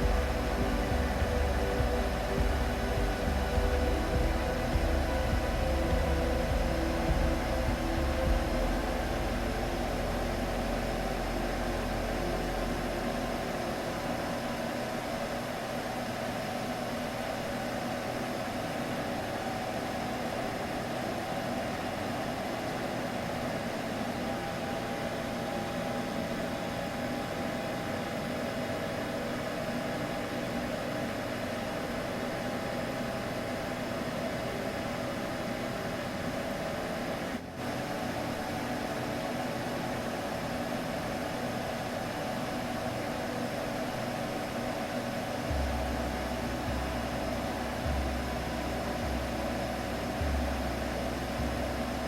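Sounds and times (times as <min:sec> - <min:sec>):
low rumble: 0:00.0 - 0:14.3, 0:45.5 - 0:52.0
soft hiss: 0:00.0 - 0:24.8.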